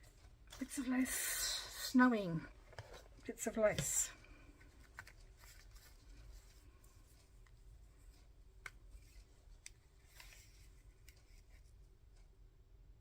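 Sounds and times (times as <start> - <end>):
faint rustling of lace and paper: 0.0 - 12.3.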